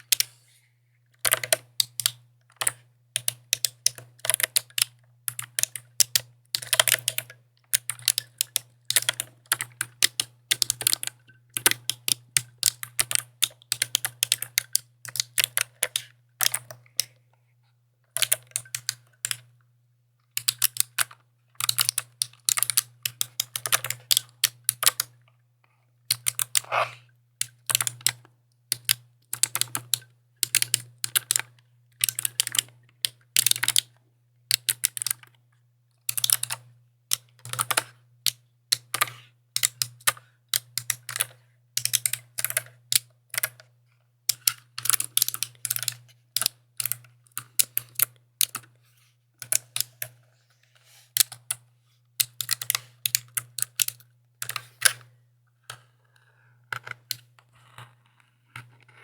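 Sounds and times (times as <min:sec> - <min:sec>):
keyboard typing clicks: 0:01.2 - 0:16.9, 0:18.2 - 0:19.5, 0:20.4 - 0:25.2, 0:27.4 - 0:28.2, 0:36.1 - 0:37.9, 0:44.3 - 0:48.7, 0:52.2 - 0:55.0.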